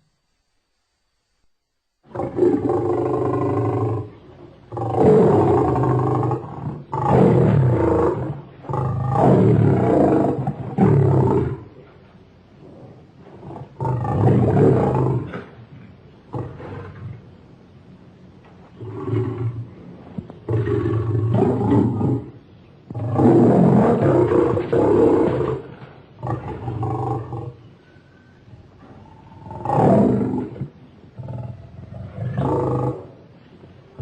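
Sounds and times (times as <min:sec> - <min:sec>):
lion-like roars: 0:02.1 - 0:11.8, 0:12.6 - 0:15.6, 0:16.3 - 0:17.3, 0:18.8 - 0:27.6, 0:28.9 - 0:33.2.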